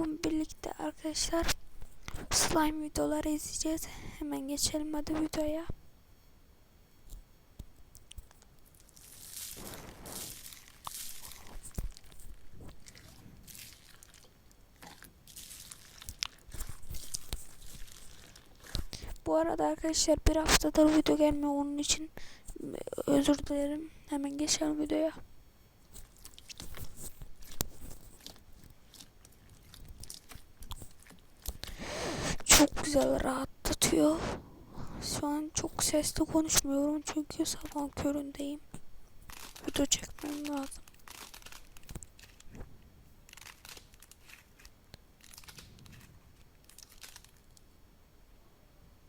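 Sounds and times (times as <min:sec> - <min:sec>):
slime crackling and clicking: 0:38.7 - 0:42.6
slime crackling when squeezed: 0:39.2 - 0:42.6, 0:43.2 - 0:47.5.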